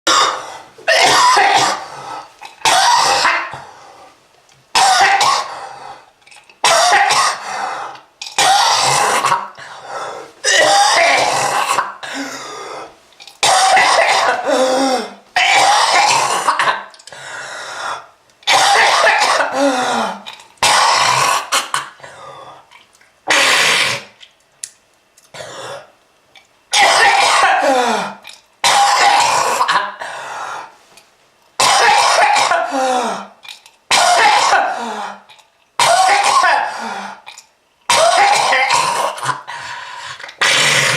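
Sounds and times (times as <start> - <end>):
person coughing: 0.1 - 1.9, 4.8 - 5.6, 6.6 - 7.4, 10.4 - 12.5, 13.4 - 16.9, 18.5 - 22.1, 26.7 - 30.1, 31.6 - 33.3, 33.9 - 37.2, 37.9 - 39.5.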